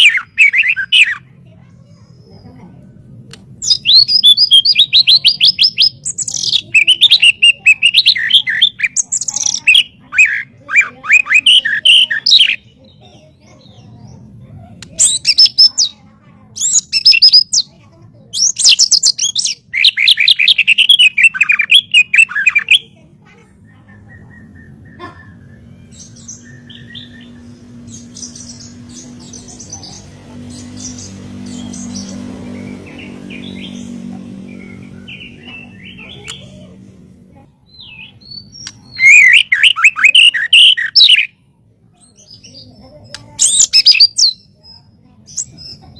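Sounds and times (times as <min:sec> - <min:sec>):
songbird singing rapid phrases: 0:00.0 - 0:45.9.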